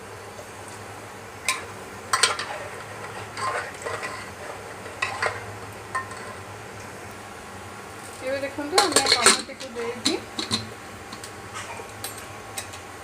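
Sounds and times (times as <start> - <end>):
light sizzle: 0.0 - 13.0
steady low hum: 0.0 - 13.0
spoon scraping metal pot: 2.2 - 6.4.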